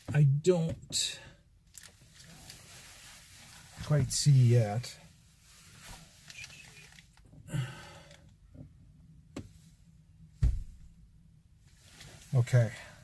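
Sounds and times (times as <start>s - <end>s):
man sighing: 7.4s - 8.2s
dull low thump: 10.4s - 11.0s.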